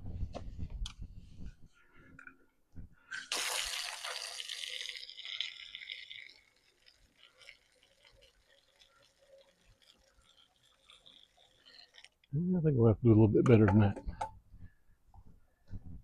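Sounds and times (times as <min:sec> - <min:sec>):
hose water spraying: 0:03.1 - 0:12.2.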